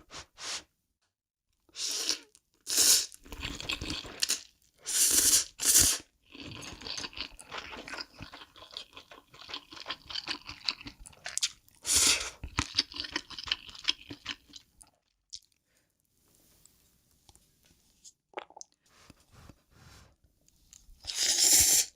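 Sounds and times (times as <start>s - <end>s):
noodle slurps: 1.8s - 10.7s, 21.0s - 21.9s
wet chewing: 12.4s - 15.6s.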